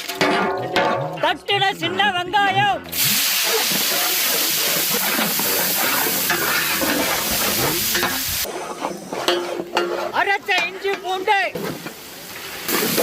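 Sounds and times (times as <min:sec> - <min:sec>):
shallots sizzling in oil: 0:02.9 - 0:08.5, 0:11.6 - 0:13.0.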